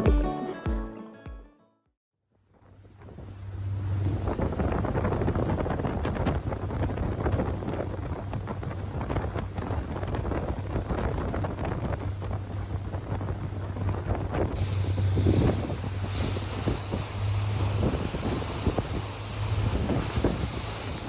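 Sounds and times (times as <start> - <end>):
low motor hum: 2.5 - 21.0
wind buffeting microphone: 2.8 - 21.0
rushing splashing water: 4.0 - 21.0.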